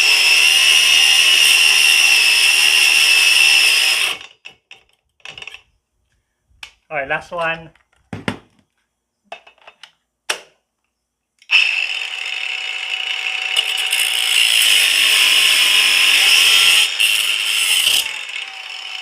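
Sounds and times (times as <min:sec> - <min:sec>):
angle grinder cutting steel: 0:00.0 - 0:04.4, 0:11.5 - 0:19.0.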